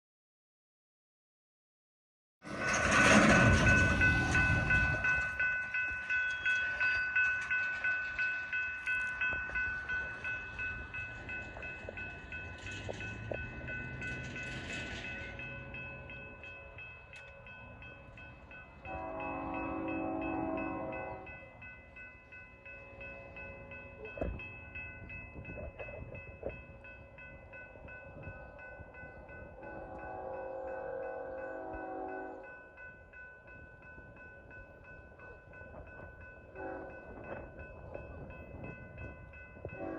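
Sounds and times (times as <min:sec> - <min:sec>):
low train rumble: 0:02.4 - 0:39.9
railroad crossing bell ringing: 0:02.5 - 0:39.9
locomotive horn blast: 0:18.9 - 0:21.3, 0:29.7 - 0:32.4, 0:36.6 - 0:37.1.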